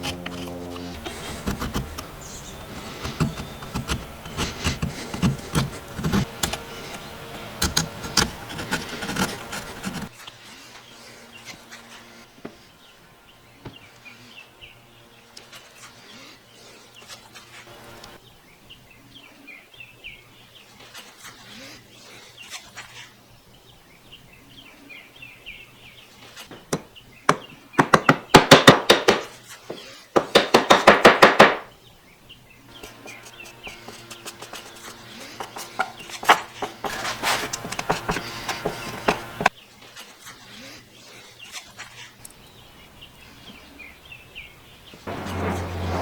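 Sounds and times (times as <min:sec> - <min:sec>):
rapid rasping on wood: 0:00.0 - 0:10.2, 0:33.0 - 0:39.5
light scratches and taps on wood: 0:32.8 - 0:39.5.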